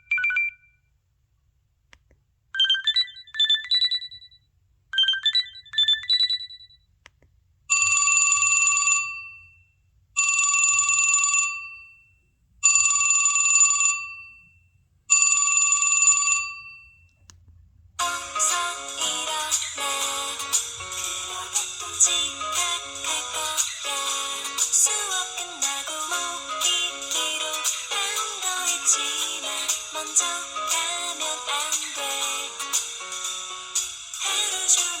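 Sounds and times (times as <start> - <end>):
bell-like phone ring: 2.6 - 4.4, 7.7 - 17.1.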